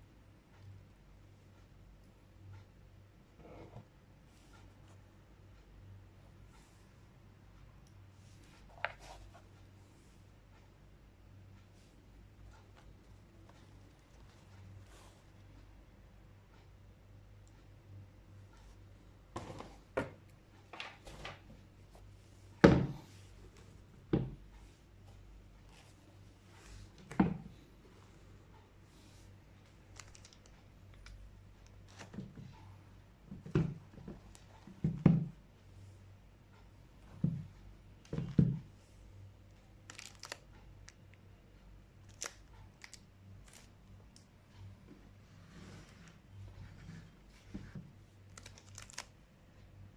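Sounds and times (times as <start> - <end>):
soft rustling: 21.0 - 31.0, 42.2 - 49.1
paper or plastic crinkling: 29.9 - 30.5, 39.9 - 40.4, 48.3 - 49.1.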